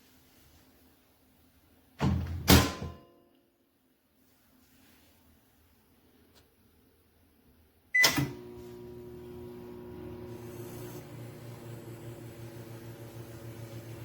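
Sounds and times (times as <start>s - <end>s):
microwave beep: 7.9s - 10.8s
microwave click: 8.0s - 8.5s
microwave humming: 8.0s - 14.0s.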